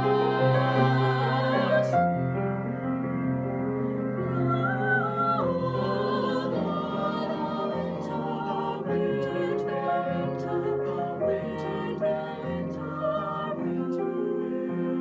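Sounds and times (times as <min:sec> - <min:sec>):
piano chords: 0:00.0 - 0:15.0.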